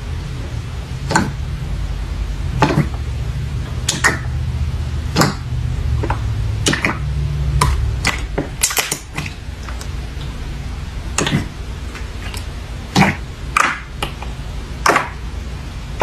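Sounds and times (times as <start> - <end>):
steady low rumble: 0.0 - 16.0
slime squishing with pops: 1.0 - 1.4, 2.6 - 3.0, 3.6 - 4.3, 5.1 - 10.4, 11.1 - 15.3.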